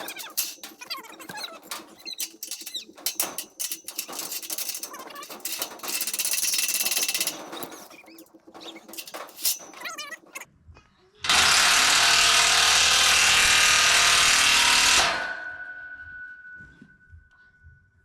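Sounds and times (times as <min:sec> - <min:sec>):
metal clinks and knocks: 0:00.0 - 0:10.4
cordless power tool running: 0:11.3 - 0:15.3.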